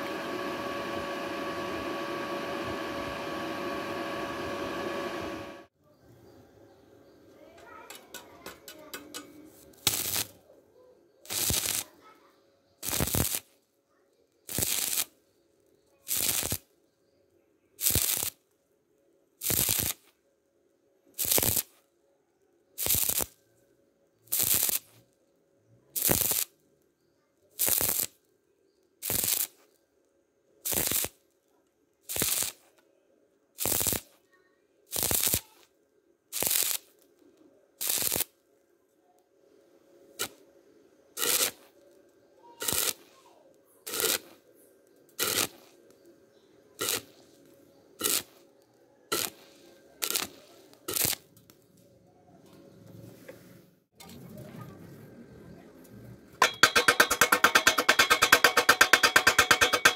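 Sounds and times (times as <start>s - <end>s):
welding arc crackling: 7.9s - 10.4s, 11.3s - 12.0s, 12.8s - 13.6s, 14.5s - 15.2s, 16.1s - 16.7s, 17.8s - 18.4s, 19.4s - 20.1s, 21.2s - 21.8s, 22.8s - 23.4s, 24.3s - 25.0s, 26.0s - 26.5s, 27.6s - 28.2s, 29.0s - 29.6s, 30.6s - 31.2s, 32.1s - 32.7s, 33.6s - 34.2s, 34.9s - 35.7s, 36.3s - 37.1s, 37.8s - 38.4s, 40.2s - 40.4s, 41.2s - 41.9s, 42.6s - 43.1s, 43.9s - 44.4s, 45.1s - 45.9s, 46.8s - 48.4s, 49.1s - 51.6s, 56.4s - 59.9s.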